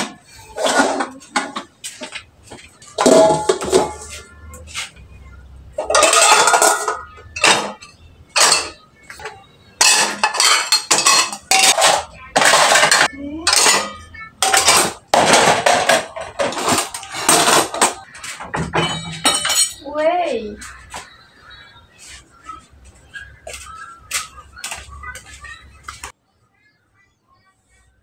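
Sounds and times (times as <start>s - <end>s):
dishes and cutlery clattering: 0.0s - 5.0s, 5.8s - 19.9s.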